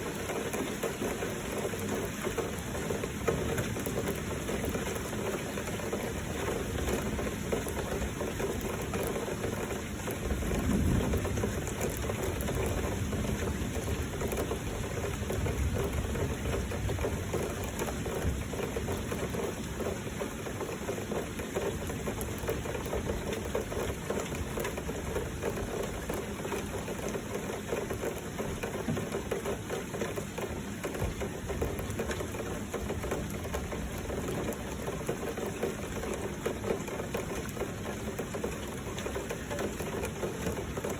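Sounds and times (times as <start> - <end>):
heavy rain: 0.0 - 40.9.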